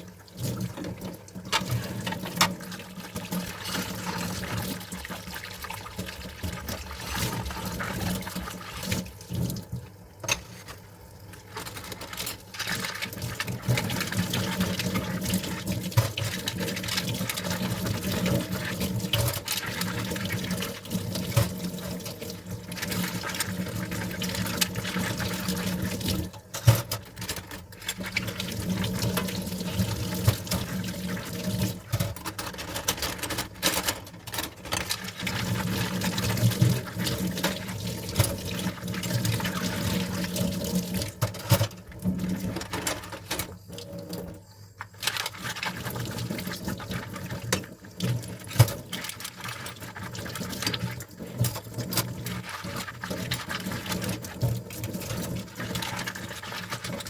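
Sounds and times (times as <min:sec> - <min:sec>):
tap water running into sink: 0:00.0 - 0:57.0
dishes clinking: 0:10.2 - 0:10.6.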